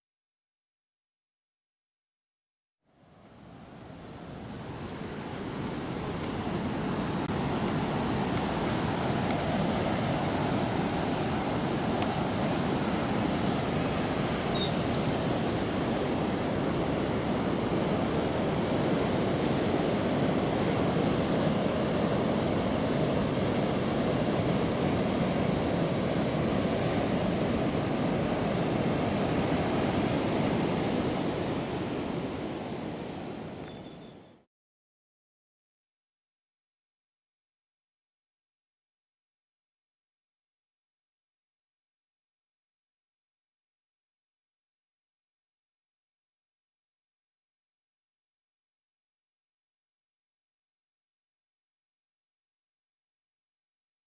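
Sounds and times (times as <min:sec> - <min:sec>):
faint high chirps: 0:14.5 - 0:15.6, 0:33.6 - 0:34.4.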